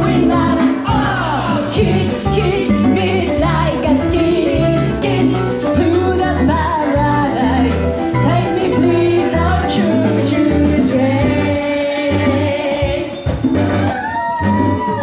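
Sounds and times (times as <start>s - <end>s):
person singing lead: 0.0s - 13.3s
salsa band playing: 0.0s - 15.0s.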